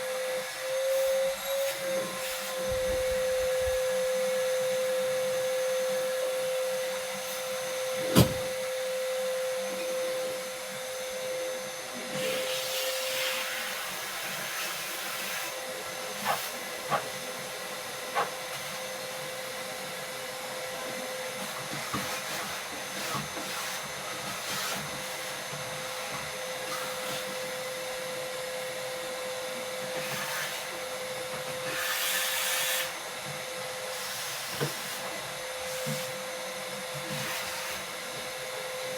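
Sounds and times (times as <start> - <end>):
small electric motor whine: 0.0 - 16.6.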